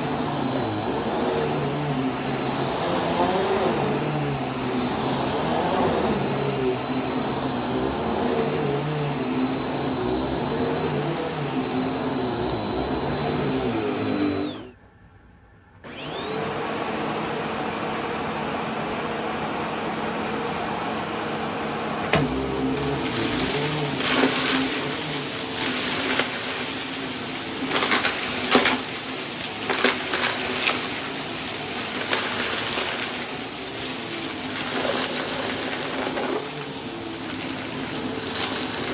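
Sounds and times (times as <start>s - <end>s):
vacuum cleaner motor whining: 0.0s - 38.9s
debris crunching in vacuum: 22.1s - 38.9s.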